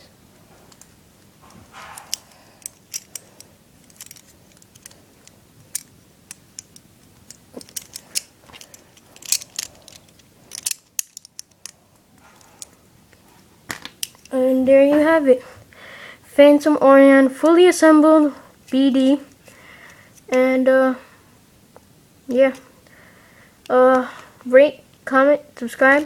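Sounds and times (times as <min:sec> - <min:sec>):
plastic and metal parts clicking: 0:02.0 - 0:05.0, 0:05.7 - 0:11.8.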